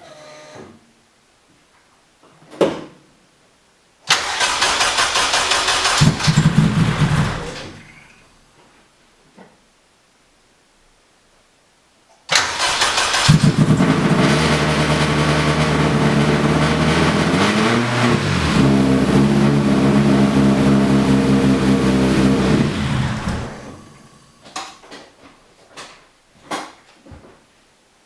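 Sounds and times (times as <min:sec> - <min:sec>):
car engine running and stalling: 0:04.1 - 0:08.2, 0:12.3 - 0:24.6.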